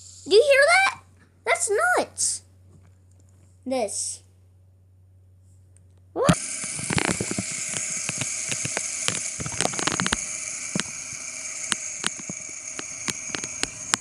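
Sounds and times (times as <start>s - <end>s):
fidget spinner whirring: 0.0s - 1.8s, 6.2s - 14.0s
spinner clicks and ticks: 6.4s - 14.0s.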